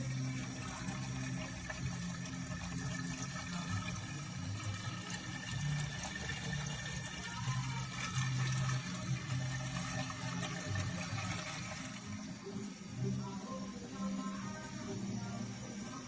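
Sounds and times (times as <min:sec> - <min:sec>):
water running through siphon: 0:00.0 - 0:12.4.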